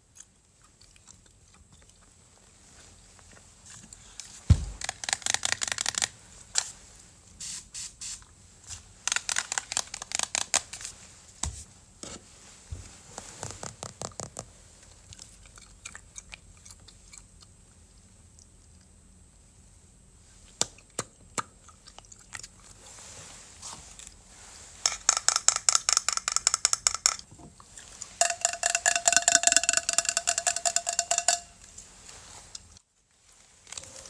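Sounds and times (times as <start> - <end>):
crunchy chewing: 0.0 - 5.0, 14.9 - 19.1, 21.6 - 22.8
thump: 4.5 - 4.8.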